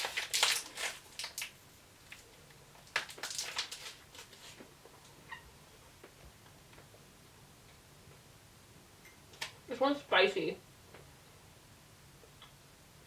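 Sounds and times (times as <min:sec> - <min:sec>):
plastic packaging rustling: 0:00.0 - 0:04.7.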